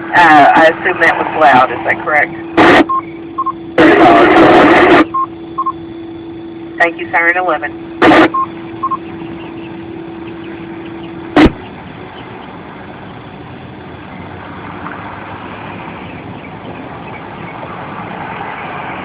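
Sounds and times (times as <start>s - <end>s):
rushing background noise: 0.0s - 19.0s
steady hum: 0.0s - 19.0s
short radio beeps: 0.2s - 9.2s.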